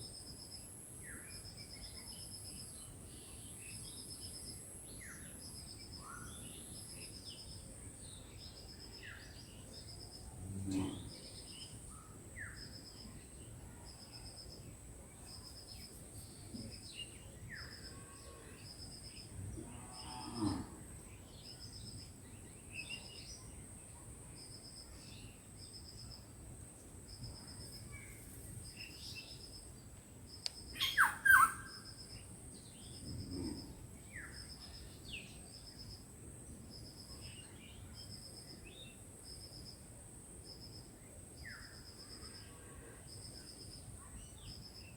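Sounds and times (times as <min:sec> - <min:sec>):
birds chirping and calling: 0:30.8 - 0:31.8.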